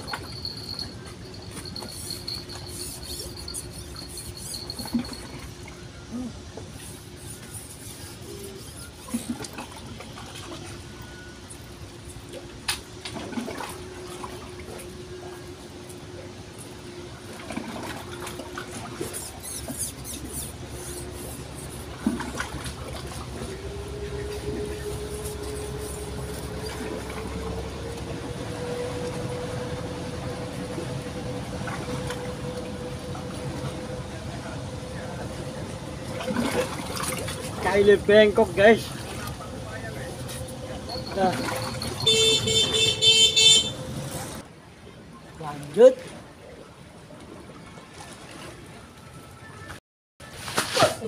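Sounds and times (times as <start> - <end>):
river water running: 0.0 - 49.6
humming drone: 20.1 - 37.6.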